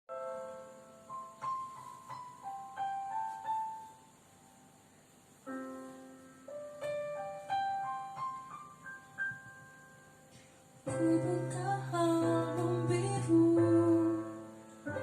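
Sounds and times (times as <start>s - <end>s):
slow piano melody: 0.1s - 15.0s
low piano chord: 5.4s - 15.0s.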